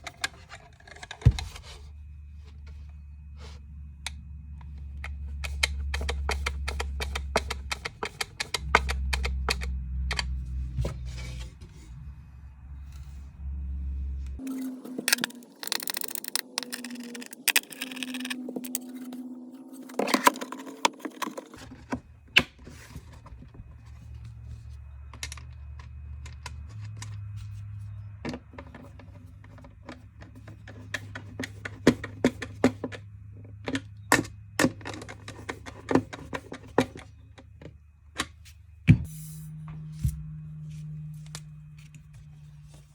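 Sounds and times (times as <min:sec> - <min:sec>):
small parts clicking and knocking: 0:14.4 - 0:19.1.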